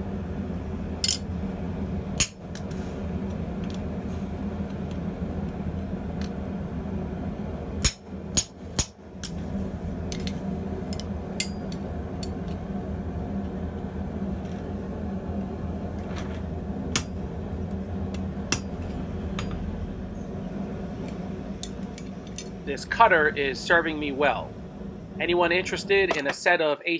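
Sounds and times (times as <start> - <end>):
machine hum: 0.0 - 26.5
hammer striking steel: 2.2 - 2.4, 7.8 - 9.5, 11.0 - 11.8, 16.9 - 17.3, 18.5 - 19.8.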